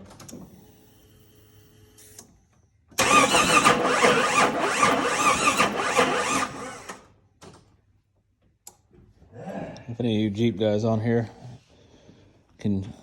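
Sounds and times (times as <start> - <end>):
starter cranking engine: 3.0 - 7.1.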